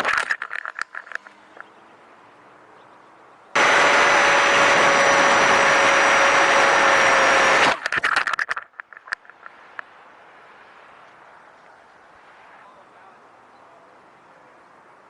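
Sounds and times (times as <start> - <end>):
crackling clicks: 0.0 - 1.7, 6.5 - 9.9
electric motor and propeller whine: 3.6 - 7.8.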